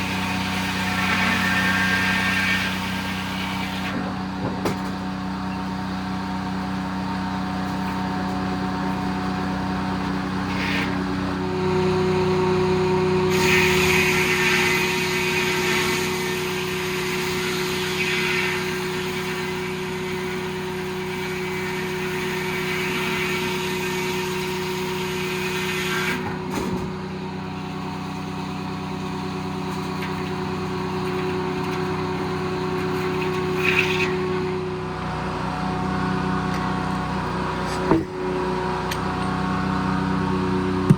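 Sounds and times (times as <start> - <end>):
circular saw cutting log: 0.0 - 5.0, 6.8 - 40.9
diesel engine running: 0.0 - 14.3, 26.2 - 40.9.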